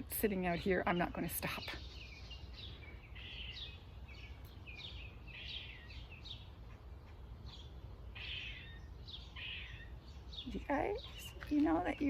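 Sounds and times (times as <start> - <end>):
squirrel chattering alarm calls: 3.1 - 11.4.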